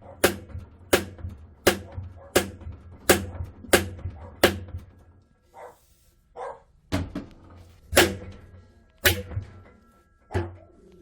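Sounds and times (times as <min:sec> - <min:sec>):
hammer striking metal: 0:00.0 - 0:05.2, 0:07.9 - 0:10.6.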